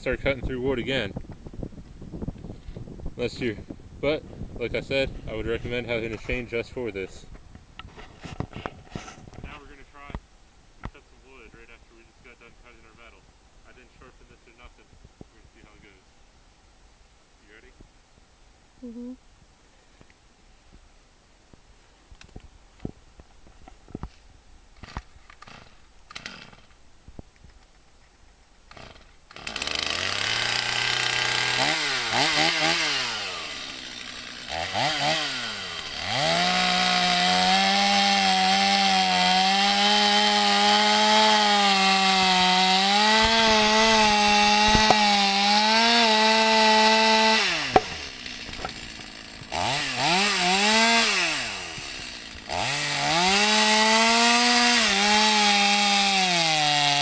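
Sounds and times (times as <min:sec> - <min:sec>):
chainsaw revving and cutting wood: 0:24.8 - 0:26.8, 0:28.7 - 0:57.0.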